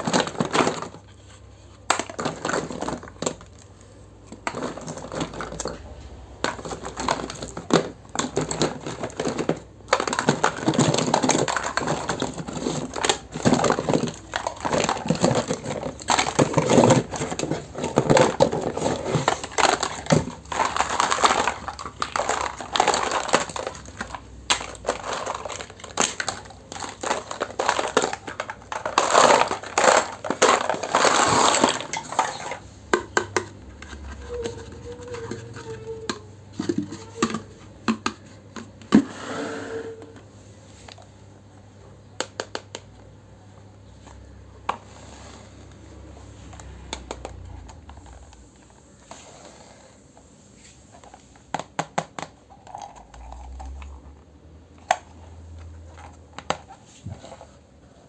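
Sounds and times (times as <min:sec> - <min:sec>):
plastic packaging crinkling: 0:04.4 - 0:32.6
plastic toy pieces clicking: 0:06.4 - 0:38.2.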